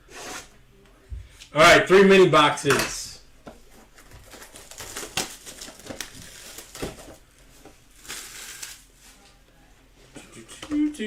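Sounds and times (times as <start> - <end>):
plastic wrapping crinkling: 3.9 - 9.4.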